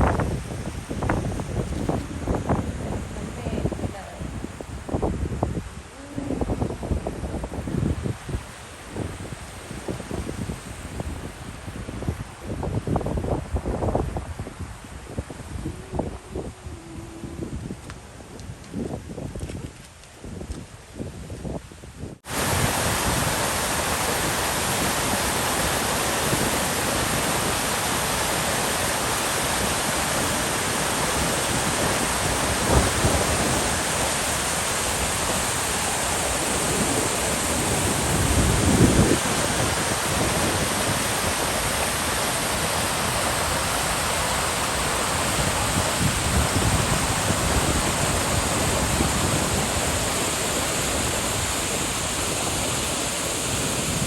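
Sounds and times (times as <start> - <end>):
waterfall rushing: 22.2 - 54.0.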